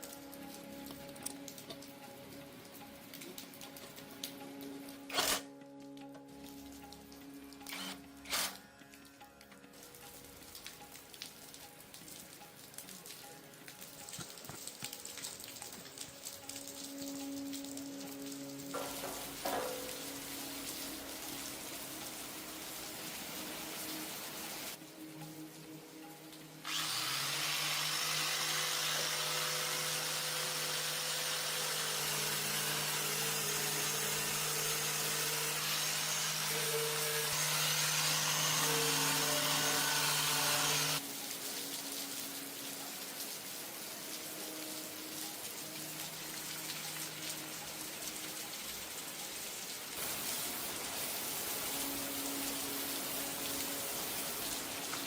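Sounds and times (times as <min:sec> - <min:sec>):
soft background music: 0:00.0 - 0:55.0
power tool running: 0:05.1 - 0:05.4, 0:07.7 - 0:08.6, 0:26.6 - 0:41.0
steady hiss: 0:18.2 - 0:55.0.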